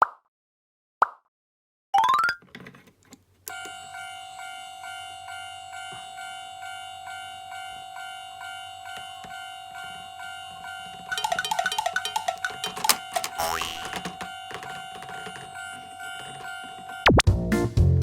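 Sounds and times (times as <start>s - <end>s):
busy electronic tones: 10.7s - 17.2s
toy crossing bell dinging: 11.1s - 17.0s.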